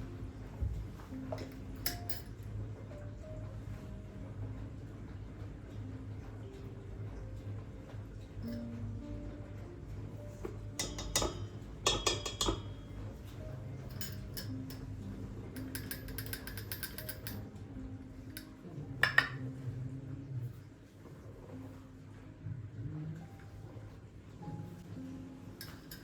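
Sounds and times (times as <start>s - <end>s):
dishes and cutlery clinking: 1.0s - 2.6s, 8.2s - 9.4s, 10.2s - 19.7s, 25.5s - 26.0s.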